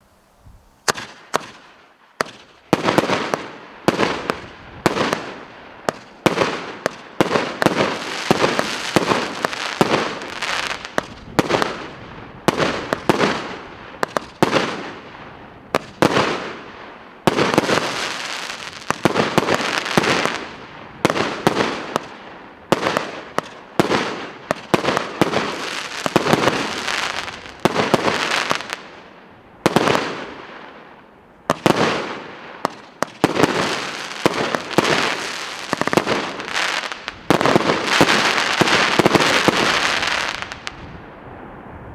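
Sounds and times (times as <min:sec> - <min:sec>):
firework cake firing: 0:17.3 - 0:28.8, 0:31.5 - 0:40.8.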